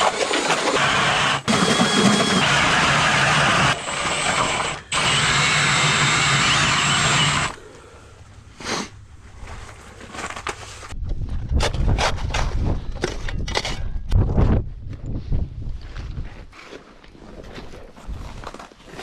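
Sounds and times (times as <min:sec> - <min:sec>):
ice auger engine drilling: 0:00.0 - 0:07.6.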